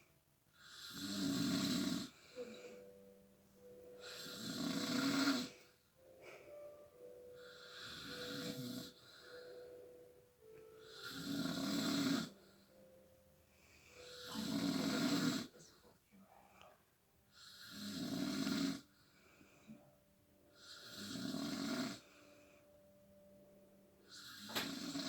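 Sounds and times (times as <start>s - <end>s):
loud snoring: 0.6s - 2.2s, 4.0s - 5.6s, 7.4s - 9.5s, 10.8s - 12.5s, 14.0s - 15.6s, 17.4s - 18.9s, 20.6s - 22.1s, 24.1s - 25.0s.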